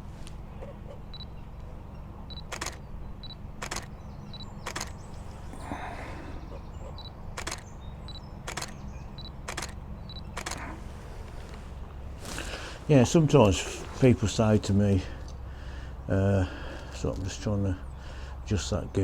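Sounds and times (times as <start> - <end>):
camera focus beep: 2.3 - 5.0, 7.0 - 10.6
camera shutter click: 2.4 - 2.8, 3.6 - 3.9, 4.6 - 5.0, 7.4 - 7.7, 8.5 - 8.8, 9.4 - 10.6.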